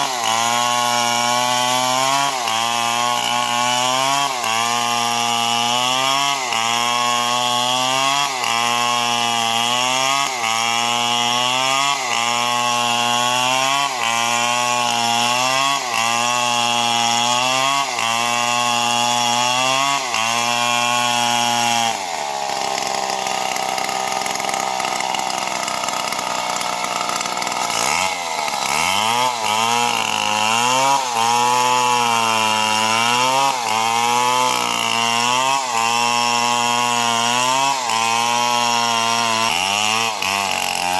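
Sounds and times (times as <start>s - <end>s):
chainsaw cutting wood: 0.0s - 40.9s.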